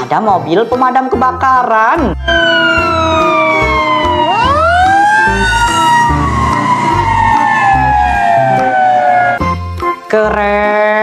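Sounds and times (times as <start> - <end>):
background music with steady beat: 0.0 - 11.0
fire engine siren wailing: 2.2 - 9.4.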